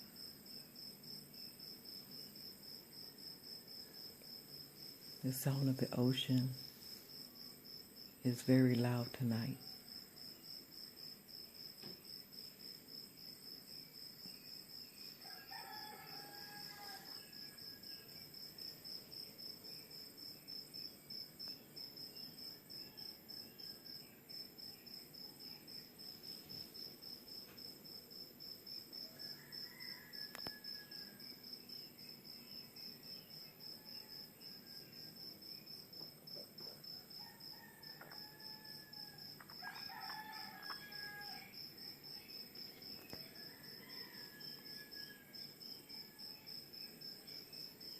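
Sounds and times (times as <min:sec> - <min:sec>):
crickets chirping: 0:00.0 - 0:47.9
rooster crowing: 0:15.2 - 0:18.0, 0:29.0 - 0:31.3, 0:37.0 - 0:41.8, 0:42.9 - 0:46.5.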